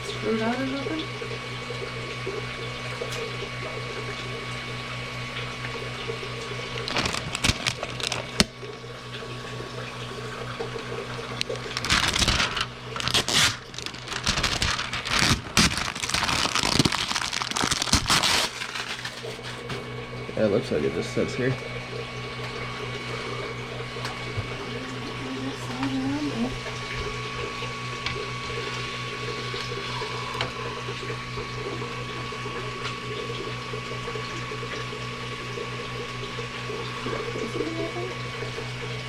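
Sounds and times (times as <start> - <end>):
low electrical hum: 0.0 - 39.0
parts rustling and clattering: 11.4 - 19.8.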